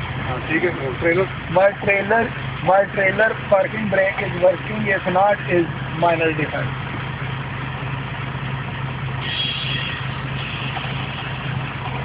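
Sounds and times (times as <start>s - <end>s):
diesel engine idling: 0.0s - 12.0s
air hiss: 9.2s - 11.5s.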